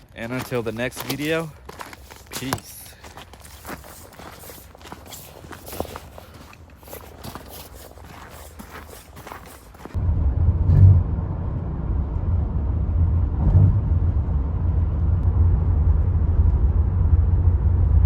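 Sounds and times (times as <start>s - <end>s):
loud low rumble: 10.0s - 18.0s.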